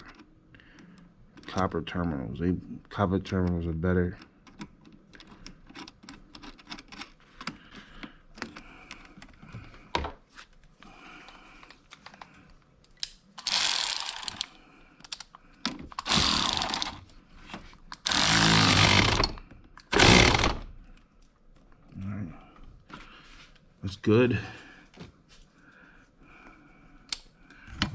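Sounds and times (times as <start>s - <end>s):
cordless power tool bursts: 13.4s - 14.4s, 16.0s - 17.0s, 18.0s - 20.7s.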